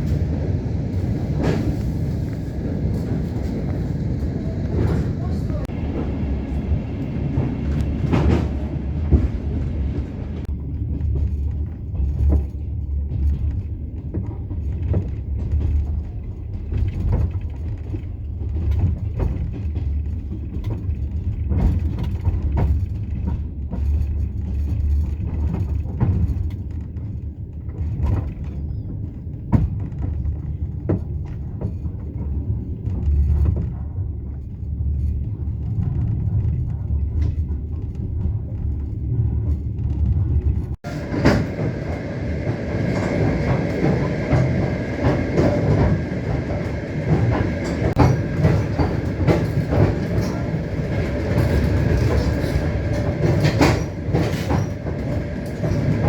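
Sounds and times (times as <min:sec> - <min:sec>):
train wheels rumbling on rails: 0:00.0 - 0:56.0.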